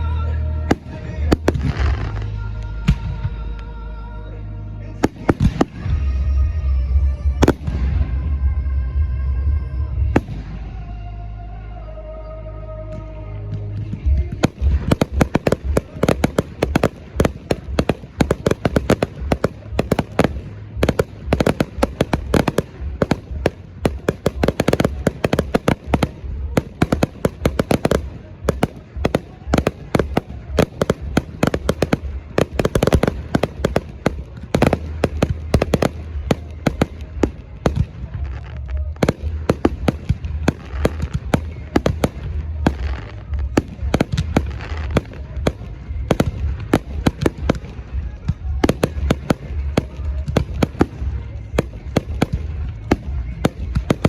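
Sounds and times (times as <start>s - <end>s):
fireworks bangs and crackling: 0.6s - 3.6s, 5.0s - 11.0s, 12.9s - 54.0s.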